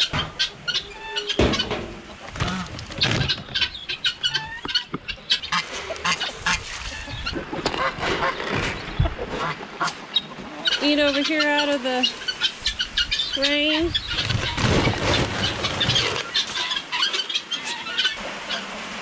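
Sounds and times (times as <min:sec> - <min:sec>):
chickens squawking and clucking: 0:00.0 - 0:18.8.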